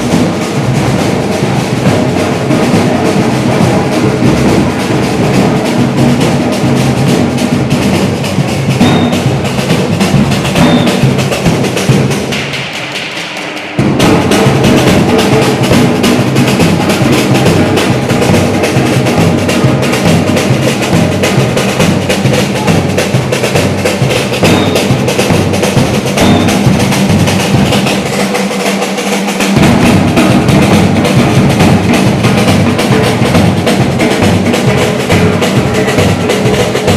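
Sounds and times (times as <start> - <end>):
bass drums: 0.0 - 12.4, 13.8 - 36.9
samba percussion ensemble: 0.0 - 36.9.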